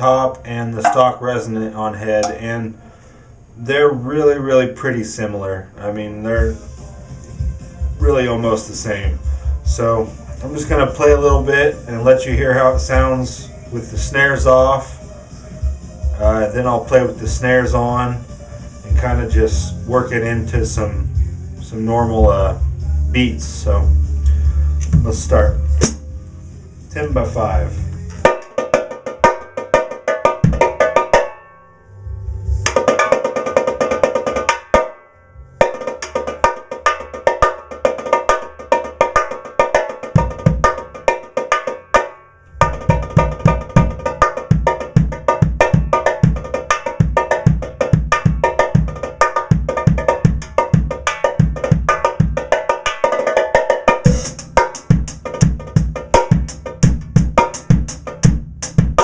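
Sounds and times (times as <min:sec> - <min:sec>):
high-tuned snare drum strokes: 0:00.7 - 0:02.6, 0:24.8 - 0:31.3, 0:32.5 - 0:34.7, 0:35.7 - 0:41.7, 0:42.6 - 0:59.0
kick drum thuds: 0:24.9 - 0:25.2, 0:30.4 - 0:30.7, 0:42.6 - 0:52.4, 0:54.1 - 0:59.0.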